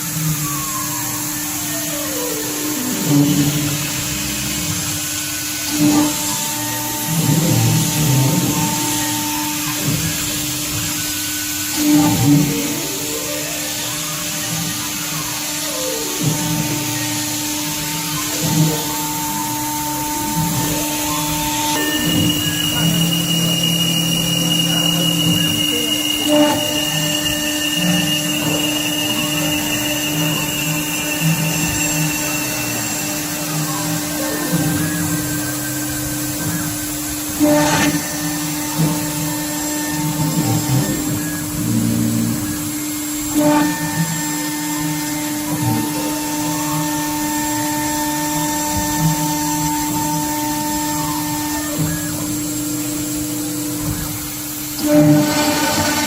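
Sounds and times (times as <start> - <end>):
metal cutting tone: 0.0 - 56.0
router spindle whining: 0.0 - 56.0.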